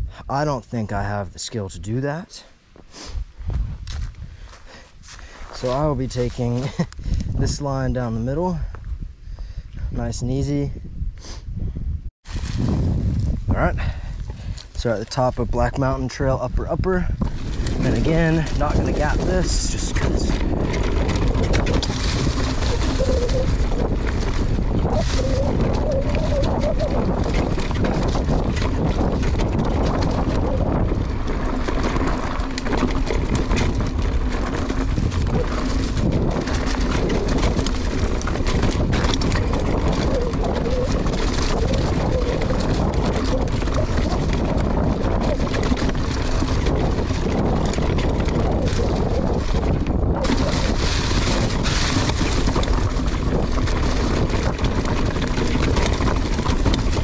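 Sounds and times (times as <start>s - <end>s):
wind buffeting microphone: 3.1s - 57.0s
bike rattling and knocking: 3.5s - 8.4s, 13.2s - 57.0s
tyres rolling through leaves: 17.2s - 57.0s.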